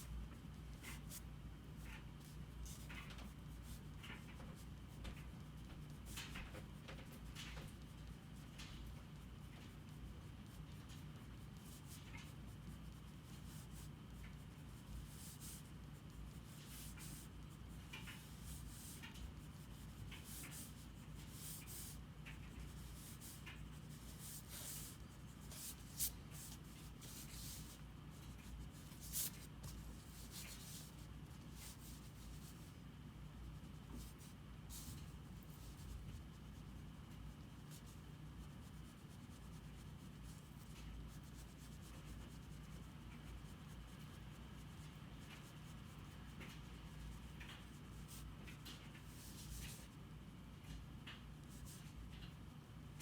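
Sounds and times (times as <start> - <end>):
faint low hum: 0.0 - 53.0
pencil strokes on paper: 9.8 - 32.8, 33.5 - 50.0.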